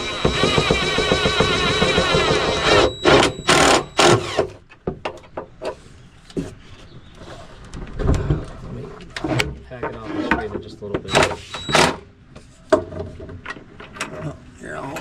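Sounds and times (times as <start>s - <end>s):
cordless drill driving a screw: 0.0s - 4.6s, 11.1s - 12.0s.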